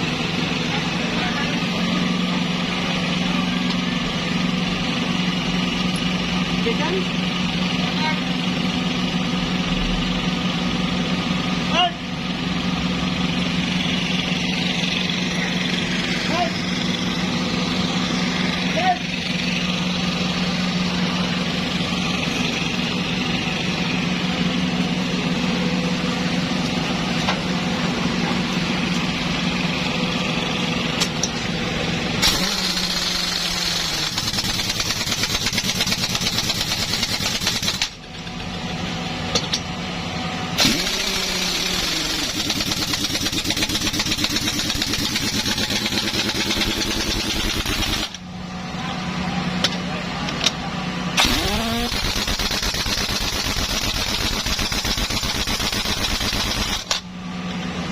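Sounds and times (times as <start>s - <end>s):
motor running: 26.4s - 38.5s, 40.6s - 48.2s, 51.2s - 57.1s.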